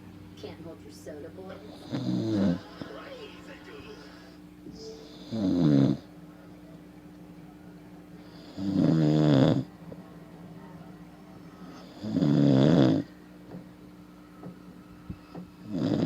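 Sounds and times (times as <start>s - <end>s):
man snoring: 1.8s - 2.8s, 5.0s - 6.1s, 8.2s - 9.7s, 11.6s - 13.1s, 15.6s - 16.0s.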